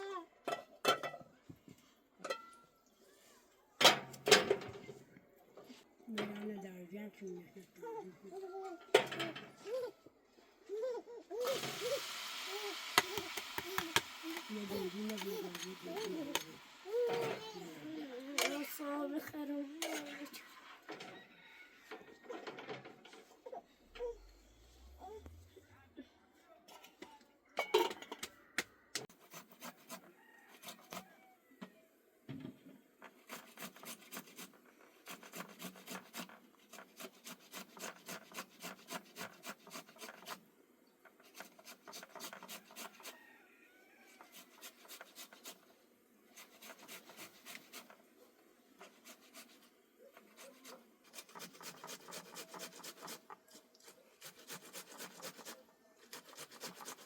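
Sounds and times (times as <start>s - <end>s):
hand tool rasping on workpiece: 13.0s - 16.5s, 33.3s - 40.4s, 41.2s - 43.1s, 46.4s - 48.0s, 50.2s - 57.0s.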